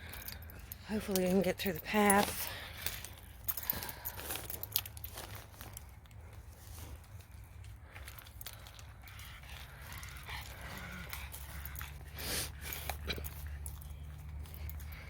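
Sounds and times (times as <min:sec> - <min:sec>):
dog breathy sound: 0:08.6 - 0:15.0.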